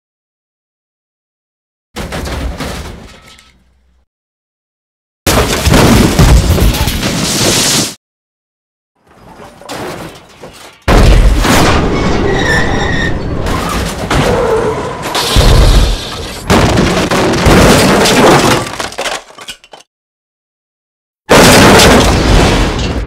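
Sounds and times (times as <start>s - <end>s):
crunching clattering wreckage: 2.0s - 4.0s, 9.0s - 19.9s, 21.3s - 23.0s.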